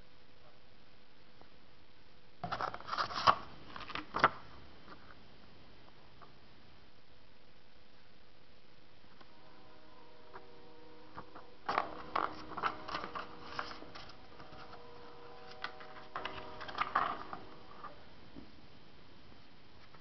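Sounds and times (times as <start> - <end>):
faint steady tone: 4.5 - 20.0.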